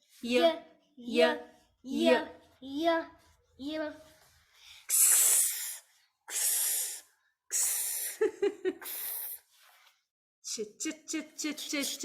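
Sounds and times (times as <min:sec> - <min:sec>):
woman making hissing sounds: 0:04.9 - 0:09.5.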